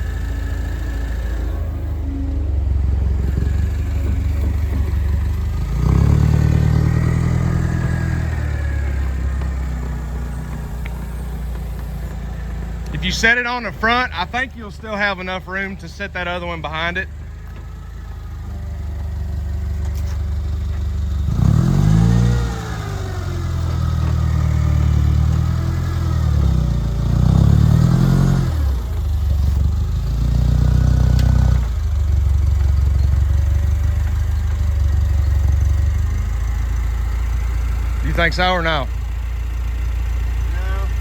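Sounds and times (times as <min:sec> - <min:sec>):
forklift engine revving: 0:00.0 - 0:41.0
clatter: 0:17.1 - 0:41.0.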